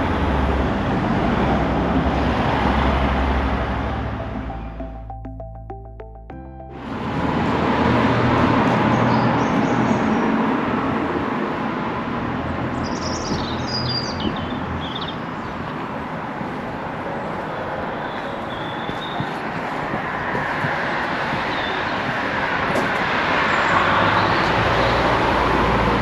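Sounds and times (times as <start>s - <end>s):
steady rushing background noise: 10.2s - 25.2s
small birds chirping: 12.7s - 24.8s.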